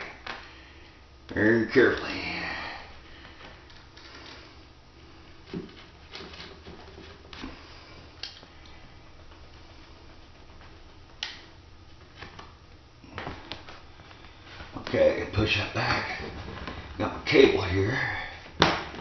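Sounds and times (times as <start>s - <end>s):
vinyl sheet being handled: 5.3s - 17.6s.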